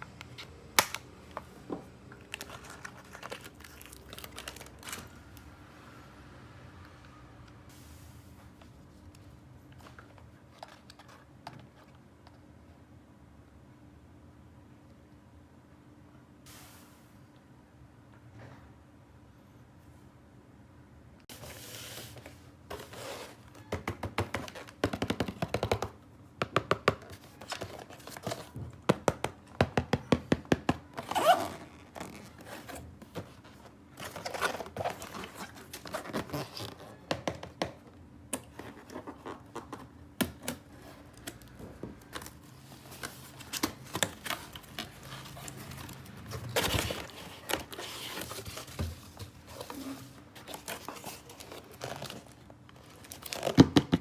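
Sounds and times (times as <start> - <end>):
packaging crinkling: 2.1 - 5.4, 30.9 - 37.0, 40.8 - 53.7.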